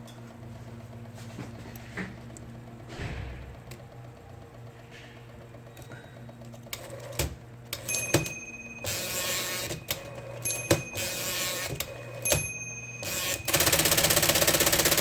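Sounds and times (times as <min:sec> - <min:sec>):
typewriter carrier return whirring: 0:04.9 - 0:15.0
typewriter motor humming: 0:05.6 - 0:15.0.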